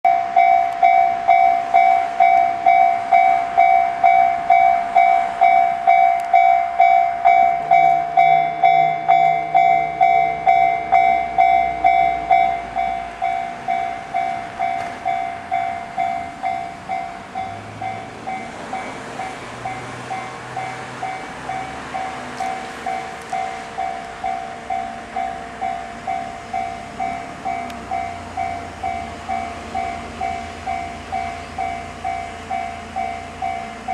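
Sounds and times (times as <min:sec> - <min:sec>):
electric train passing: 0:00.1 - 0:33.9
level-crossing alarm dinging: 0:00.1 - 0:33.9.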